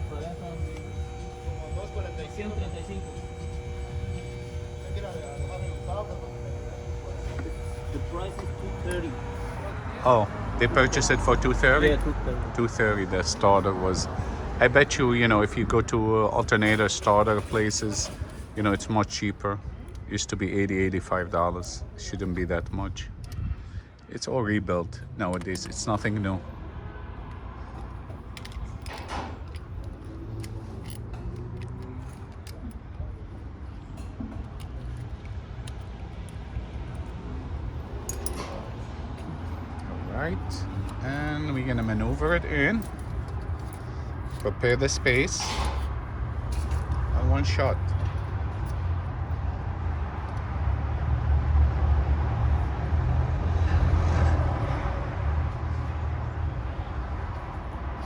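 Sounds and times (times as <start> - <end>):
vehicle engine rumbling: 0.0 - 23.6, 24.8 - 58.0
metal tools clinking: 27.7 - 39.3, 40.4 - 48.8.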